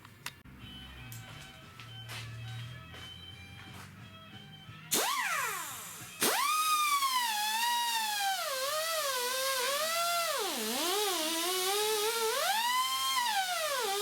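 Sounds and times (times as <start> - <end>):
angle grinder motor whine: 4.9 - 14.0.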